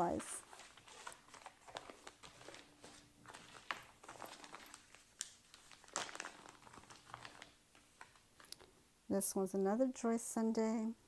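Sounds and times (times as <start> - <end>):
packaging rustling and crinkling: 0.0 - 8.8.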